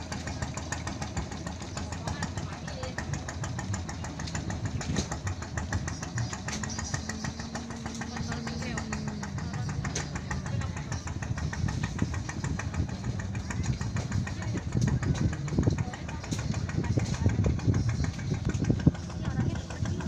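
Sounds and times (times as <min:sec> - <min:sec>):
small engine running: 0:00.0 - 0:20.0.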